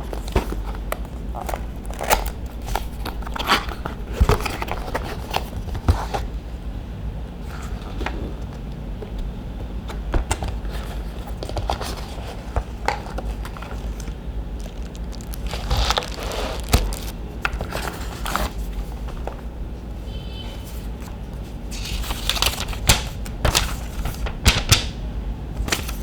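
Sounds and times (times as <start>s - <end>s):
packaging crinkling and rustling: 0.0s - 6.3s, 10.3s - 19.5s, 20.8s - 25.0s.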